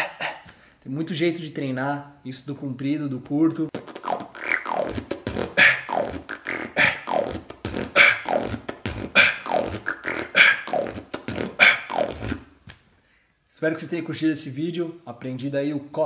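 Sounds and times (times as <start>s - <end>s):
beatboxing: 0.0s - 0.5s, 3.7s - 12.5s.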